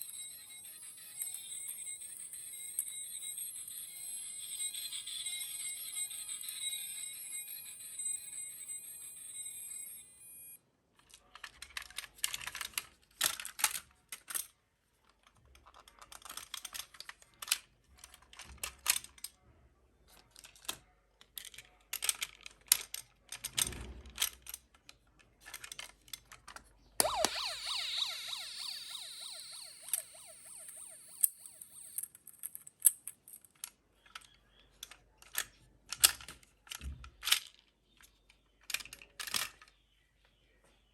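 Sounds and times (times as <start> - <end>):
toy cars clicking and rattling: 0.0 - 10.3, 11.0 - 19.4, 20.1 - 26.7, 31.8 - 39.7
toy electronic siren: 0.0 - 10.6, 27.0 - 32.0.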